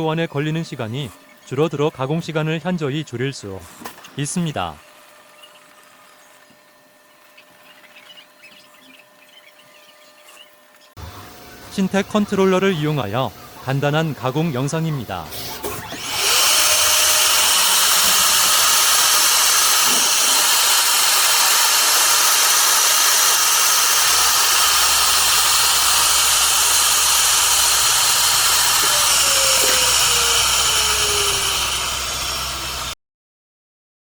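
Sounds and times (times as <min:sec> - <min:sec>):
router spindle high-pitched whine: 0:15.9 - 0:33.0.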